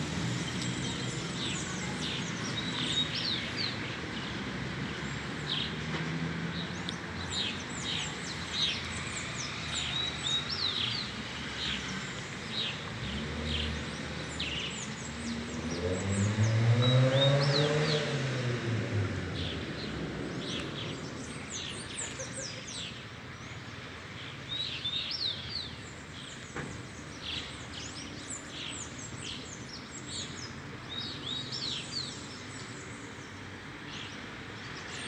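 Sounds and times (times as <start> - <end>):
motor vehicle approaching: 0.0 - 22.8
low traffic rumble: 0.0 - 35.0
birds chirping: 0.3 - 18.5.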